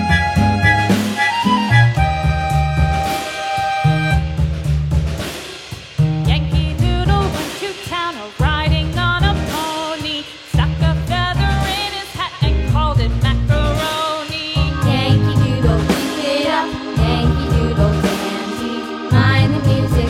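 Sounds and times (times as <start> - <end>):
heavy bass beat: 0.0 - 5.3, 6.0 - 7.4, 12.4 - 13.9, 14.6 - 20.0
wavering sung melody: 14.7 - 20.0.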